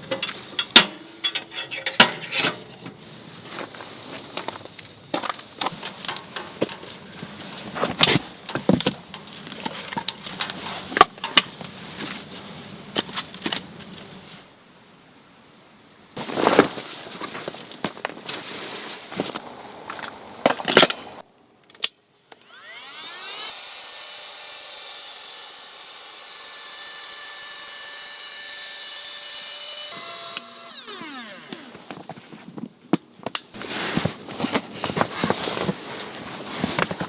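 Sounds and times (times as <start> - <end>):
crunching and rustling: 16.2 - 21.2, 31.0 - 37.0
small electric motor spinning: 22.4 - 32.1.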